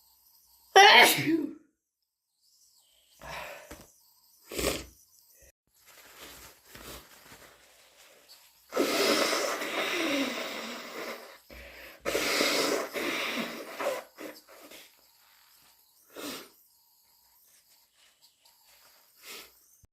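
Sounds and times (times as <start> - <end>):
person sneezing loudly: 0.8 - 1.6, 8.7 - 11.3
small breathy sound: 3.1 - 3.9, 7.8 - 16.7, 17.8 - 19.9.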